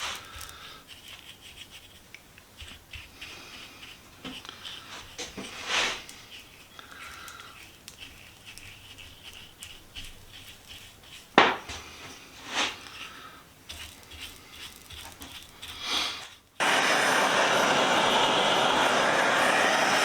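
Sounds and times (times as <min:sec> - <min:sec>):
gas torch roaring: 0:16.6 - 0:20.0.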